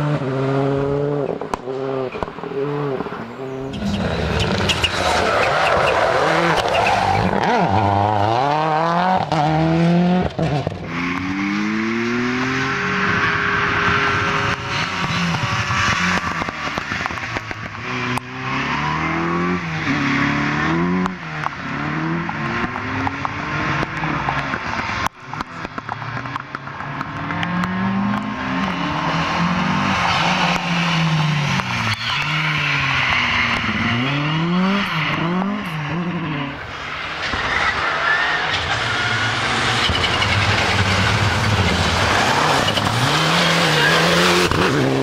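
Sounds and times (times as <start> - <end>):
rally car engines revving hard: 0.0 - 45.0
tyre noise and squeal: 3.0 - 8.8, 12.7 - 20.8, 28.2 - 45.0.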